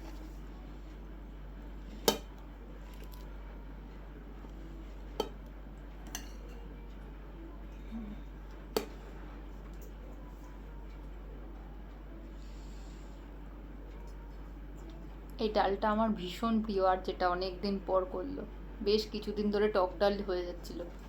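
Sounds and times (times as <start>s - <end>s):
dishes and cutlery clinking: 6.1s - 6.7s.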